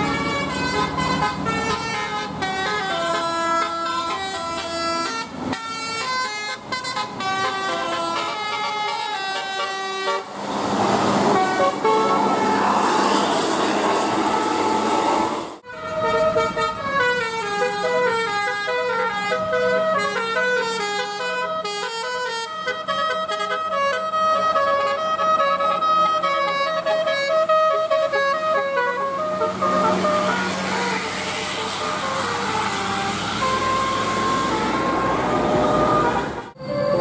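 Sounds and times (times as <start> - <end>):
multi-tone bus horn melody: 0.0 - 37.0
loud rushing noise: 10.2 - 15.6.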